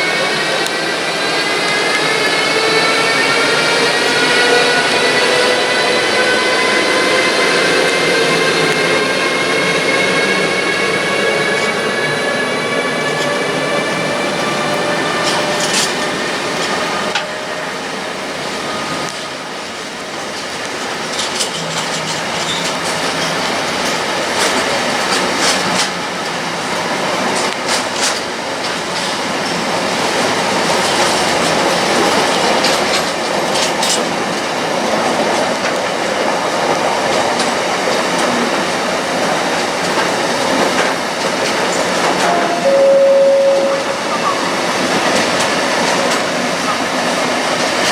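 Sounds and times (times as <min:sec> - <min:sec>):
freight train rumbling: 0:00.0 - 0:47.9
sharp clicks of rail joints: 0:15.2 - 0:16.0.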